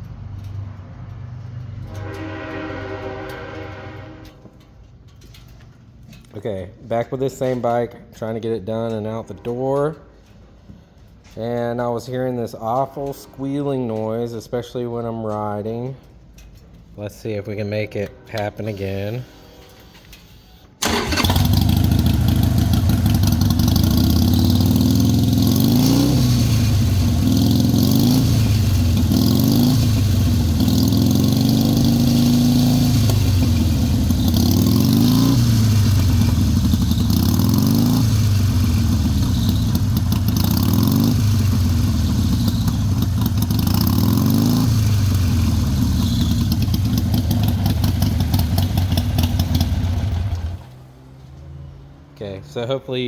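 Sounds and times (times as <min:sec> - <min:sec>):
motorcycle engine revving: 0:20.8 - 0:50.9.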